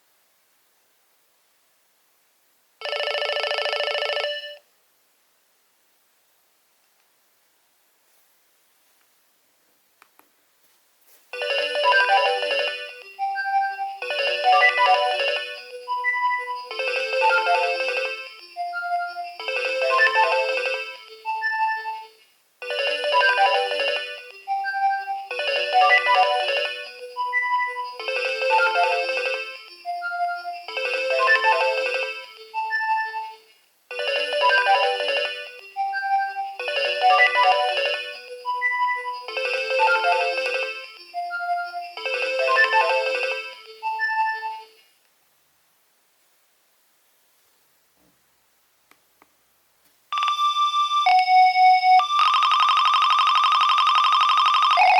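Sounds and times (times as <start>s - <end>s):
polyphonic phone ringtone: 2.8s - 4.6s, 11.3s - 44.9s, 50.1s - 54.9s.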